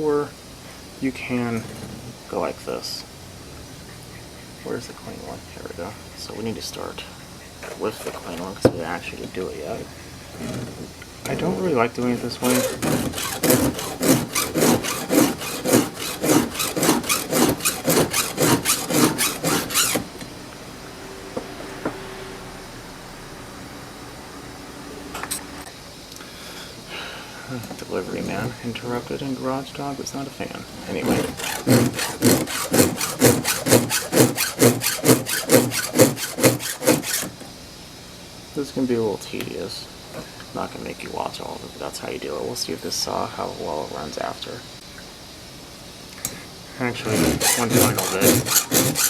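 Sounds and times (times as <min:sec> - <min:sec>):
file rasping on chainsaw chain: 0:12.1 - 0:20.1, 0:30.8 - 0:37.4, 0:47.0 - 0:49.0.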